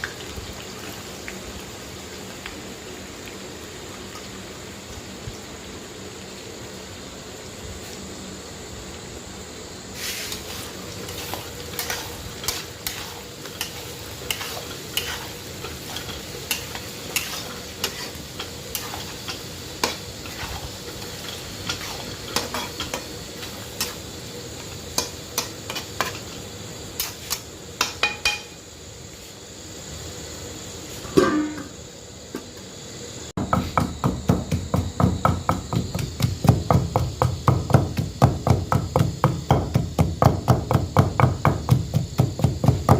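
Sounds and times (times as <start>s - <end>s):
faint sizzle: 0.0s - 42.9s
utensil scraping in pot: 10.0s - 24.0s.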